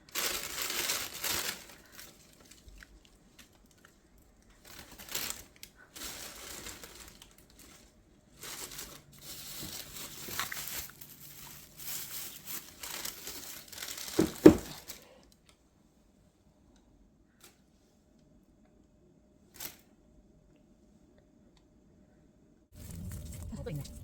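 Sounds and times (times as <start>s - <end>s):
material crinkling and rustling: 0.0s - 15.0s.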